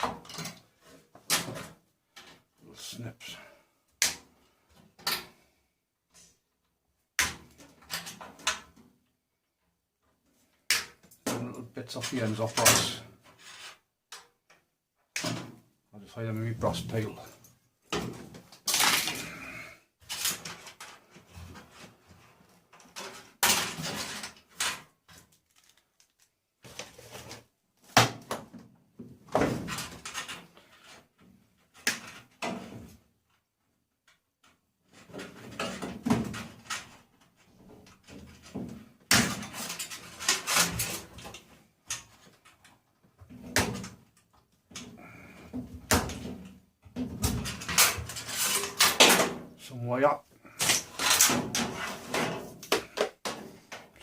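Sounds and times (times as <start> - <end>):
metal parts clattering: 18.6 - 19.4, 20.0 - 21.0, 22.8 - 24.8, 47.4 - 49.4, 50.5 - 53.0.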